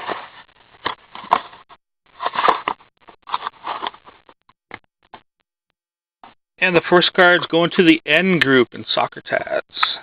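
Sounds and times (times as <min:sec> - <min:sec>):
card packaging crinkling and tearing: 0:00.0 - 0:04.2.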